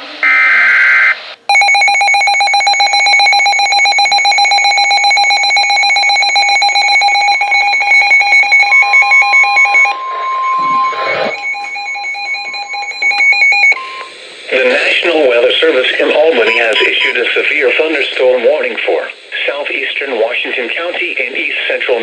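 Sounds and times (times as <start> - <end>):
steady warning alarm tone: 1.5 - 17.4.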